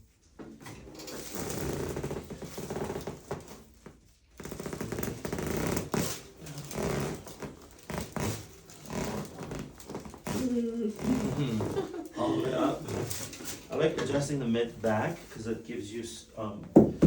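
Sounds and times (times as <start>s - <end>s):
spinal joint cracks and pops: 4.4s - 11.8s.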